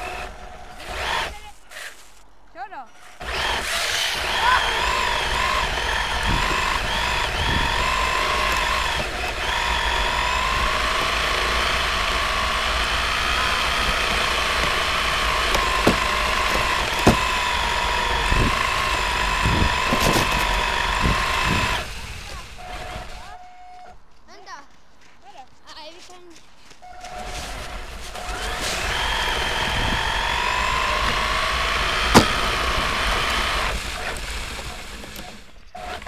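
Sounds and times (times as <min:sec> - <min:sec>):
toy car motor whining: 0:00.0 - 0:02.2, 0:03.0 - 0:24.0, 0:27.0 - 0:36.0
car knocking over ice: 0:14.0 - 0:17.7, 0:19.4 - 0:21.6, 0:32.1 - 0:32.8.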